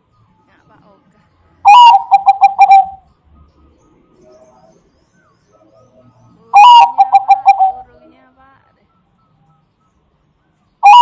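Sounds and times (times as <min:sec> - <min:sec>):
dove cooing: 0:01.6 - 0:03.0, 0:05.5 - 0:07.9.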